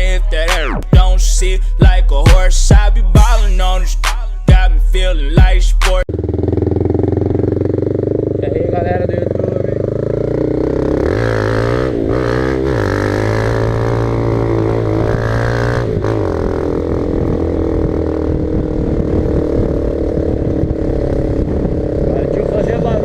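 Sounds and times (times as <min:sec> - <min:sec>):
rap beat with deep bass: 0:00.0 - 0:06.1
motorcycle engine running: 0:04.5 - 0:23.0.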